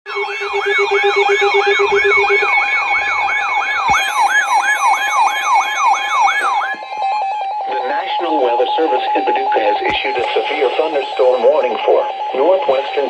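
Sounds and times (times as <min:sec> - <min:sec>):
electronic siren yelping: 0:00.1 - 0:13.0
rapid low beeping: 0:00.1 - 0:13.0
steady high tone: 0:00.1 - 0:13.0.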